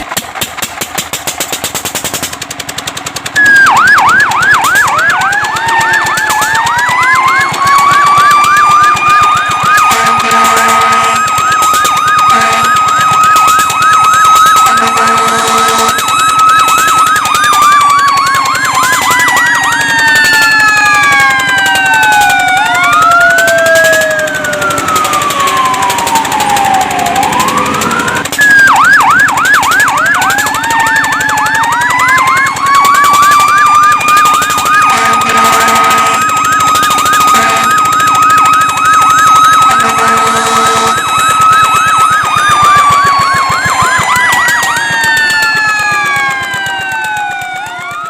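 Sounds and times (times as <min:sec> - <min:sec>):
fire truck sirens: 0:00.0 - 0:48.0
horn blasts: 0:05.2 - 0:06.6, 0:09.8 - 0:13.1, 0:14.6 - 0:16.2, 0:34.8 - 0:38.7, 0:39.3 - 0:41.2.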